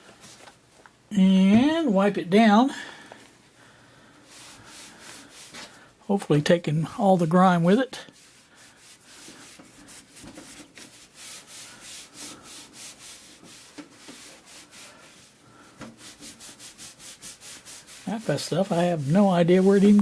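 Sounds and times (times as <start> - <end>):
wiping strokes on metal panel: 8.1 - 20.0.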